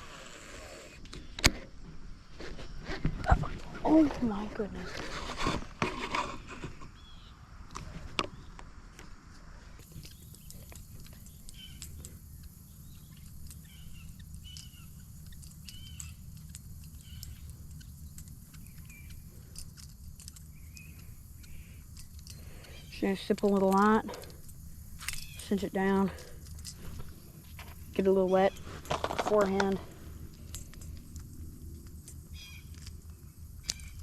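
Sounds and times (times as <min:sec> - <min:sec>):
bird chirping: 0:07.0 - 0:07.4, 0:09.8 - 0:28.8, 0:32.2 - 0:34.0
low outdoor rumble: 0:07.2 - 0:34.0.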